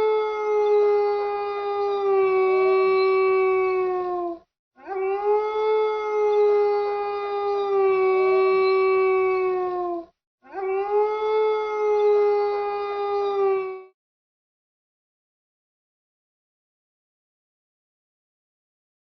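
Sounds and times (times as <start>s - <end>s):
wolf howling: 0.0s - 13.9s.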